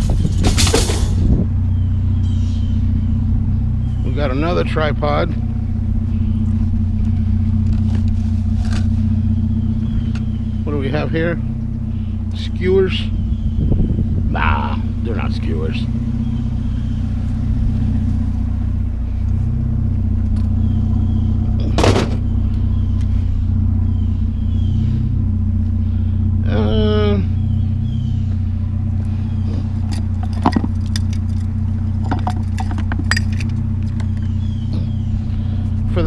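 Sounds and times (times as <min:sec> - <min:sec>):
sharp metallic clank: 0:00.0 - 0:01.3
vehicle engine idling: 0:00.0 - 0:36.0.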